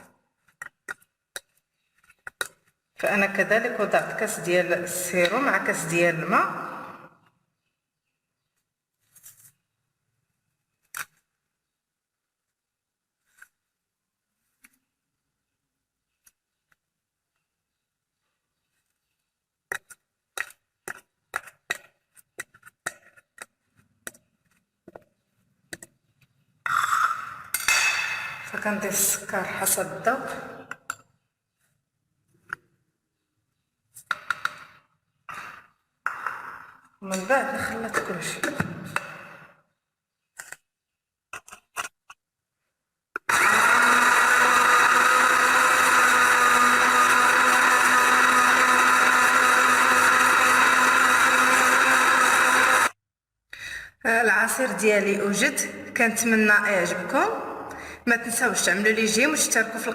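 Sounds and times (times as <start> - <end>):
blender motor running: 43.2 - 53.0.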